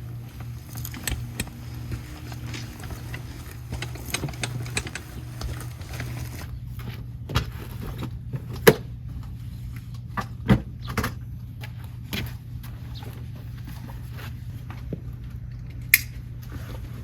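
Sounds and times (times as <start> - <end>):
steady low hum: 0.0 - 17.0
sharp clicks and knocks: 0.7 - 6.5.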